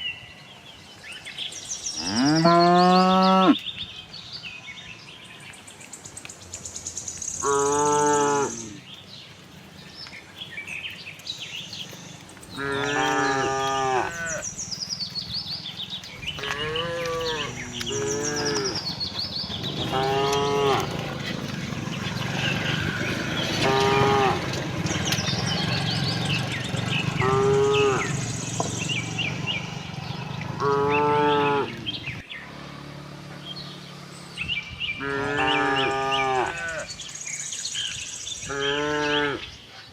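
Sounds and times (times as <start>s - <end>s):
small birds chirping: 0.0s - 39.9s
cows mooing: 2.0s - 3.6s, 7.4s - 8.9s, 12.4s - 14.7s, 16.0s - 32.2s, 35.0s - 37.0s, 38.5s - 39.5s.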